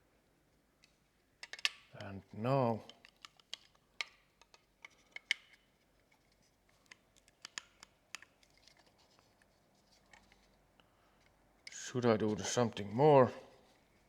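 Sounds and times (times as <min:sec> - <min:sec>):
plastic parts clicking and scraping: 0:00.8 - 0:02.1, 0:02.8 - 0:10.6.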